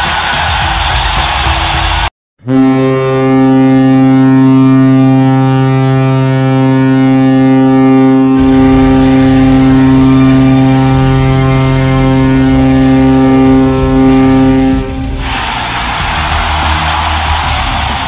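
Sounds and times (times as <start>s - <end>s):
crowd noise: 0.0s - 2.1s, 14.6s - 18.0s
loud music: 0.0s - 6.4s, 7.7s - 18.0s
low goal horn blast: 2.4s - 17.4s.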